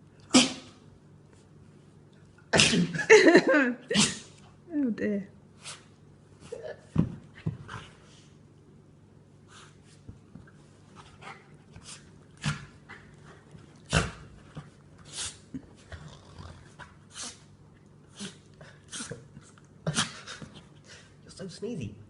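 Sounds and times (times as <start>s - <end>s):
dog sneezing and snorting: 0.3s - 0.8s, 2.5s - 3.0s, 3.8s - 4.5s, 5.6s - 6.8s, 13.9s - 14.2s, 15.1s - 15.5s, 17.1s - 17.5s, 18.1s - 19.3s, 19.9s - 20.4s.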